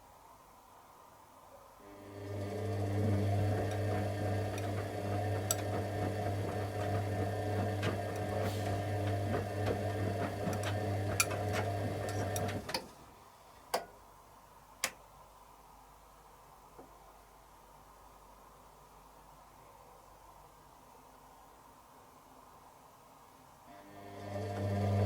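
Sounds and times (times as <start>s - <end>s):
washing machine drum motor humming: 1.9s - 12.9s, 24.0s - 25.0s.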